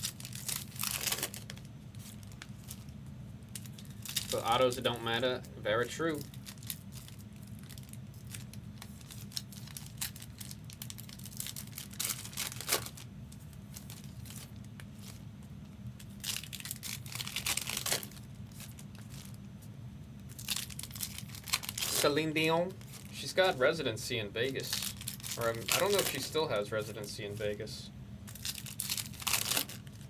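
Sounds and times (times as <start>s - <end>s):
packaging torn and crinkled: 0.0s - 5.2s, 6.0s - 13.1s, 16.0s - 19.5s, 20.2s - 23.4s, 24.4s - 26.6s, 28.2s - 30.0s
steady low hum: 0.0s - 30.0s.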